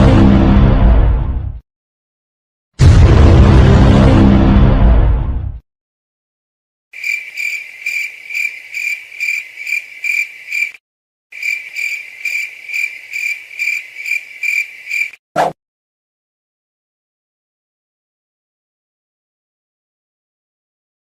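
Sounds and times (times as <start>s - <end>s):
crickets chirping: 7.0s - 10.8s, 11.4s - 15.2s.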